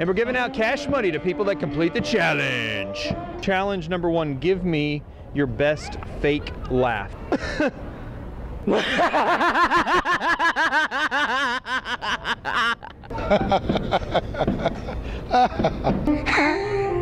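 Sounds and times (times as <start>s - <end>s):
voices: 0.0s - 7.7s
person laughing: 6.2s - 7.8s, 8.7s - 16.6s.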